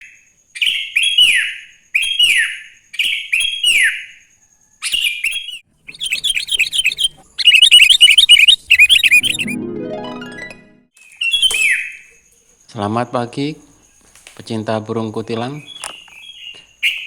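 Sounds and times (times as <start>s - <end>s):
bird whistling song: 0.0s - 9.6s, 11.0s - 12.2s, 15.5s - 17.0s
bird chattering notes: 5.9s - 9.6s.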